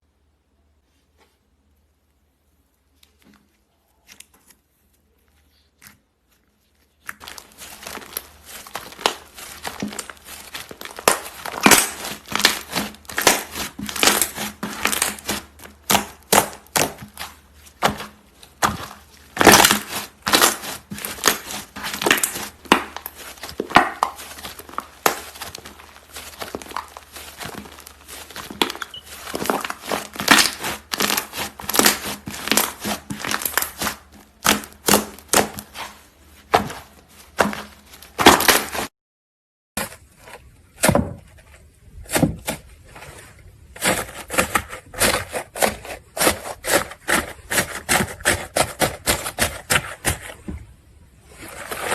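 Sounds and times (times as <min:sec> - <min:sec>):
slime crackling and popping: 0:07.0 - 0:38.9.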